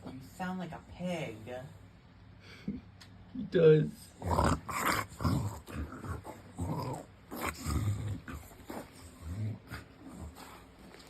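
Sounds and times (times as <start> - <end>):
dog grunting: 4.1 - 11.0.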